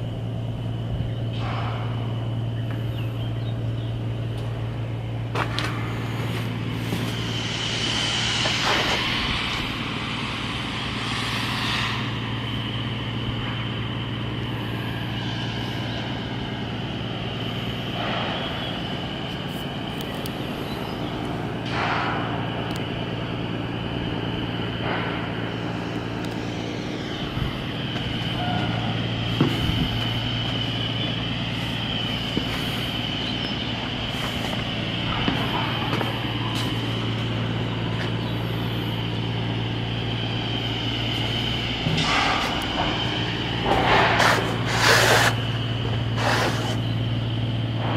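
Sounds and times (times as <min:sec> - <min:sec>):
machinery hum with high whine: 0:00.0 - 0:47.9
short hisses: 0:44.2 - 0:46.9.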